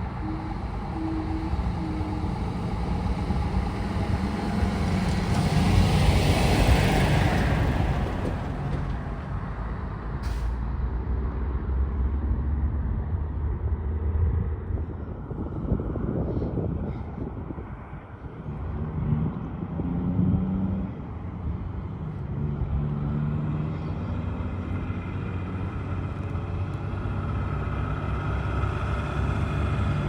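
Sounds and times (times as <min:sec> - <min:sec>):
truck diesel engine passing: 0:00.0 - 0:12.2, 0:18.4 - 0:30.0.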